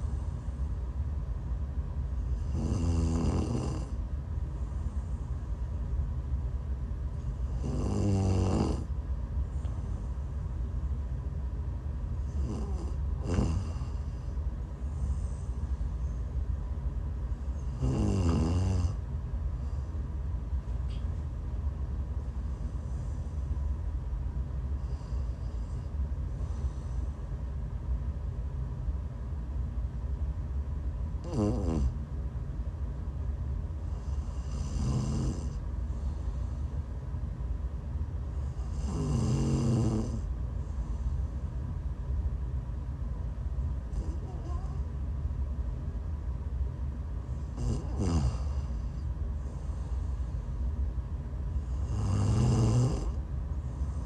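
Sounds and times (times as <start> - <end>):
faint breaths: 0.0 - 28.2, 32.8 - 46.2, 46.8 - 54.0
steady low rumble: 0.0 - 54.0
woman snoring: 2.3 - 4.0, 7.4 - 8.9, 12.3 - 14.2, 17.6 - 19.0, 31.2 - 32.0, 33.9 - 35.6, 38.5 - 40.3, 43.9 - 44.8, 47.5 - 49.0, 51.6 - 53.2.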